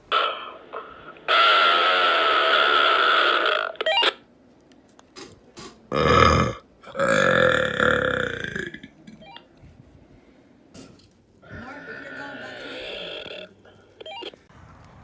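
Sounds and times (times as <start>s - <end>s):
person burping: 5.9s - 9.2s, 12.5s - 13.6s.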